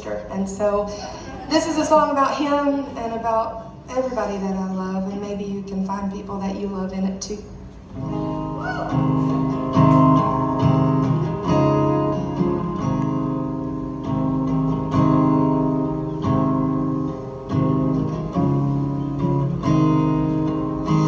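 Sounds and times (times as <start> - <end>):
acoustic guitar chords: 7.8 - 21.0.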